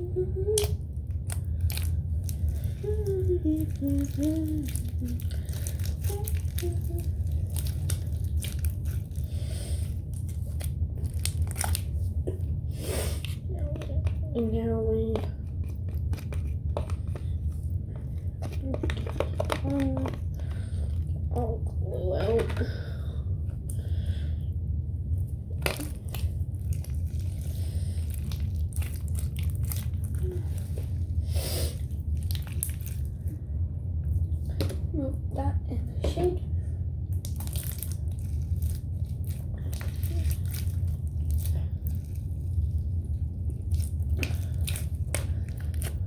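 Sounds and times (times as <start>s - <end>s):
slime squished by hand: 0.0s - 24.1s, 24.9s - 34.9s, 37.0s - 46.0s
steady low hum: 0.0s - 46.0s
steady low rumble: 0.0s - 46.0s
small clicks and crackles: 0.4s - 9.2s, 37.1s - 46.0s.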